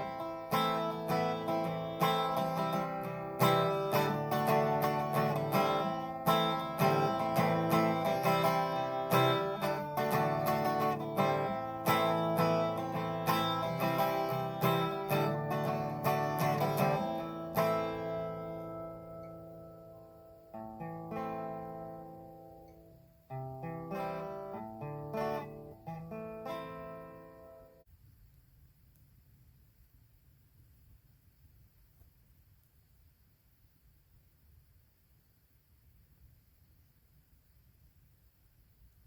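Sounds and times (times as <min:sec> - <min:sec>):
acoustic guitar music: 0:00.0 - 0:27.8.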